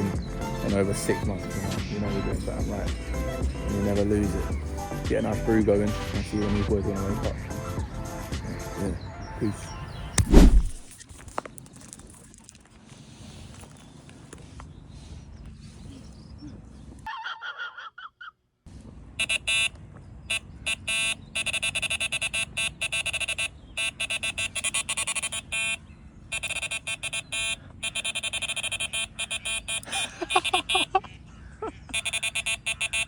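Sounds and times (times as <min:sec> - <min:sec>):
electronic bite alarm beeping: 0:19.2 - 0:19.7, 0:20.3 - 0:30.9, 0:31.9 - 0:33.0.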